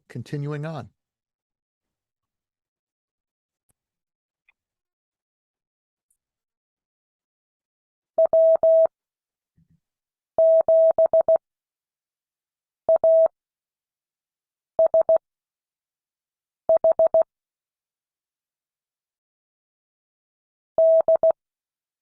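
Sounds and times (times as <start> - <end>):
morse code beeps: 10.4 - 11.4, 14.8 - 15.2, 16.7 - 17.2, 20.8 - 21.4.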